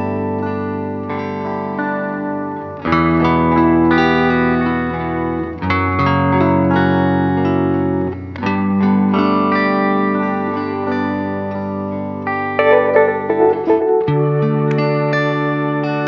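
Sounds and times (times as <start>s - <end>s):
sustained guitar chords with effects: 10.5s - 16.0s.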